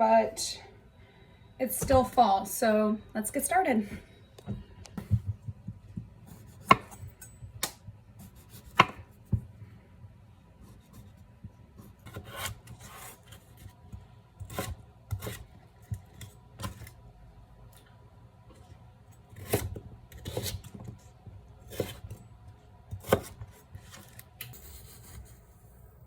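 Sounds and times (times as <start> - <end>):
knife scraping potatoes: 11.8 - 13.8, 19.3 - 21.0, 21.6 - 22.2.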